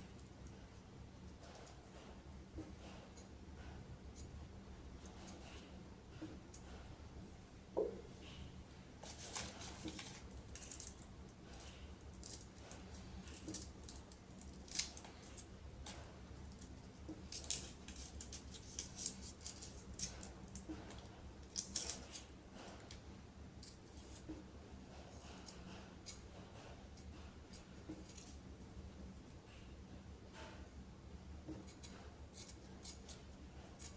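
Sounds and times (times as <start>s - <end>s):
soft knock: 7.8s - 8.1s.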